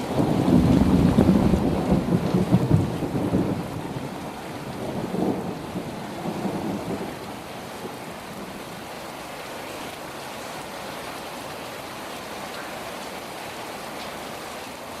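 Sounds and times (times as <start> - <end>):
thunder rumbling: 0.0 - 8.7
steady rain: 0.0 - 15.0.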